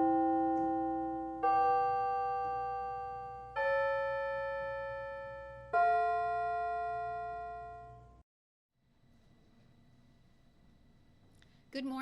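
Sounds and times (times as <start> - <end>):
piano slow sustained chords: 0.0 - 8.2.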